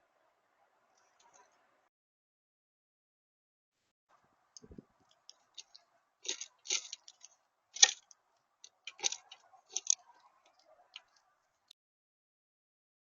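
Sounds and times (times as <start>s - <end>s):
faint steady hum: 0.0s - 1.9s, 4.1s - 11.7s
birds pecking and cracking seed: 4.1s - 11.7s.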